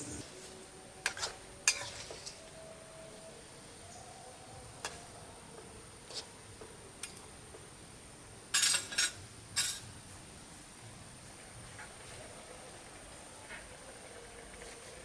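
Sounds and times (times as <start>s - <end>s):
utensils scraping pot: 0.0s - 0.2s.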